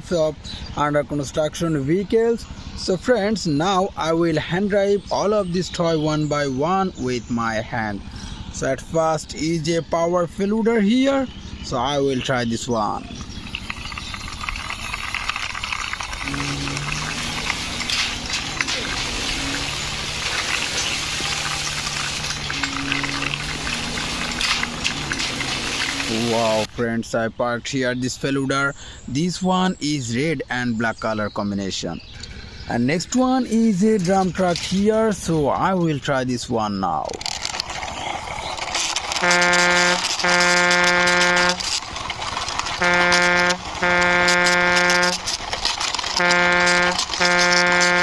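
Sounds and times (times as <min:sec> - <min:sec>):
toy wheels rolling crackling: 0:13.1 - 0:26.4, 0:37.1 - 0:48.0
truck horn honking: 0:16.2 - 0:26.4, 0:39.1 - 0:41.7, 0:42.6 - 0:45.4, 0:46.1 - 0:48.0.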